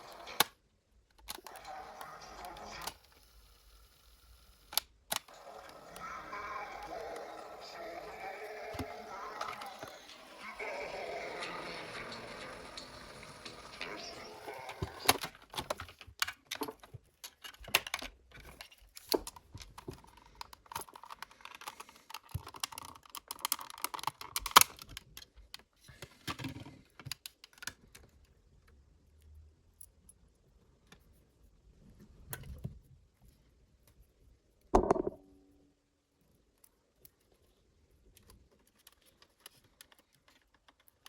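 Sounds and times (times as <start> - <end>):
small clicks and taps of tools: 36.6 - 41.0.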